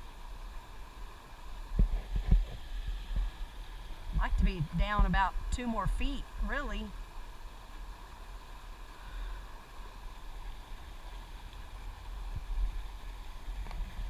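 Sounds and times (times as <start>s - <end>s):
faint river hiss: 0.0s - 14.0s
wind buffeting microphone: 1.7s - 6.6s.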